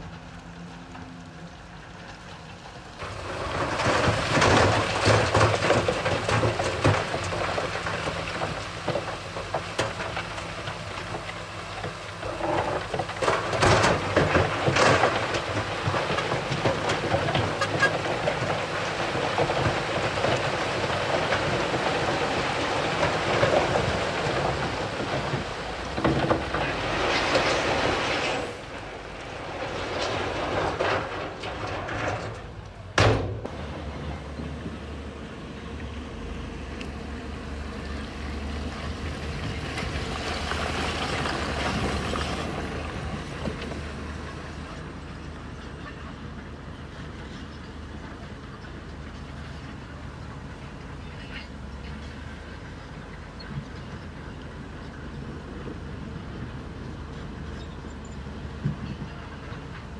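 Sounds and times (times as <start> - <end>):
diesel engine drone: 0.0 - 59.9
rocks clattering and crunching: 2.1 - 35.0, 36.7 - 46.4
rocks cracking: 3.0 - 33.6.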